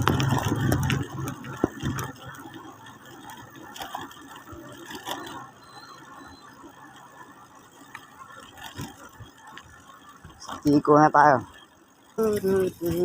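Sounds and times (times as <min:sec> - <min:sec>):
low engine hum: 0:00.0 - 0:10.4
pedal tricycle rattling and clicking: 0:00.0 - 0:13.0.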